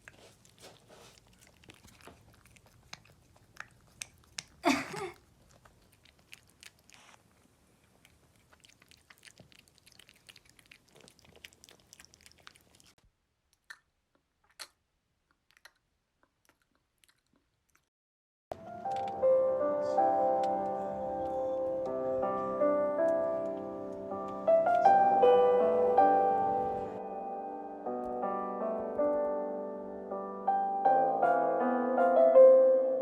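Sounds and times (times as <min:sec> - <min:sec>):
chewing and crunching: 0:00.0 - 0:17.9.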